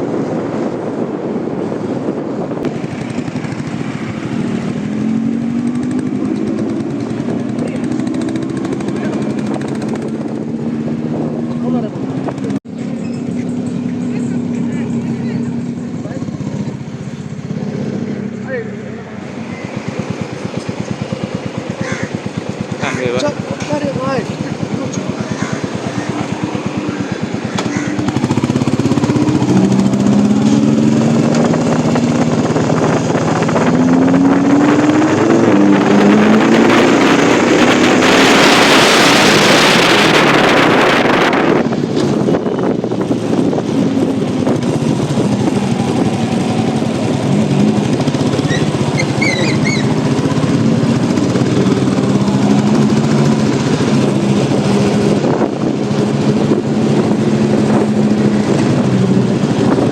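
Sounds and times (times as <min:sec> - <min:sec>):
sports car engine revving: 0:02.6 - 0:12.6, 0:13.3 - 0:59.9.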